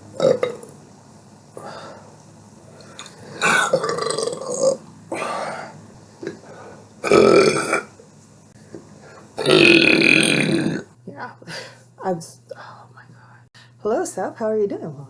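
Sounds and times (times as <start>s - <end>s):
person burping: 0.2s - 0.7s, 3.4s - 6.4s, 7.0s - 7.9s, 9.4s - 10.9s.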